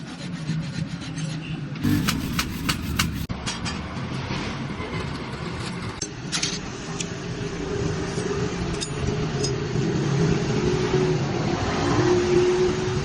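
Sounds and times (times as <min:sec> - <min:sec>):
workshop machine motor running: 0:01.8 - 0:03.3
sharp ticks: 0:01.9 - 0:03.3.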